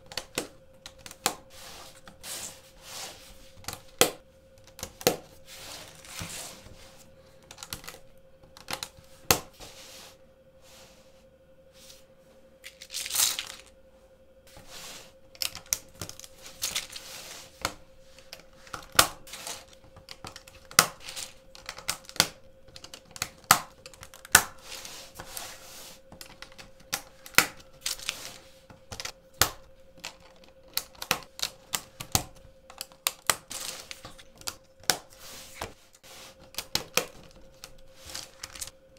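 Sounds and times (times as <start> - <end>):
faint steady hum: 0.0 - 38.9
plastic sliding rustles: 4.8 - 11.1, 14.5 - 29.2, 30.0 - 38.8.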